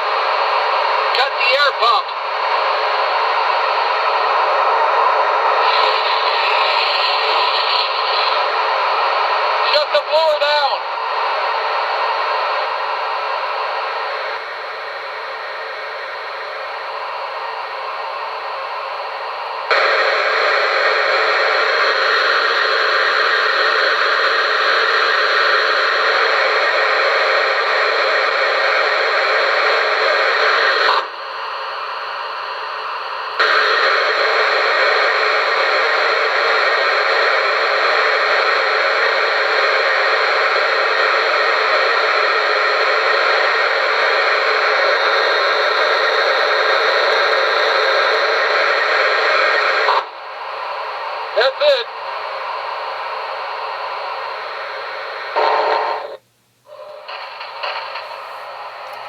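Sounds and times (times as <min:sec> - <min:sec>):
steam hiss from speaker: 0:05.6 - 0:08.5.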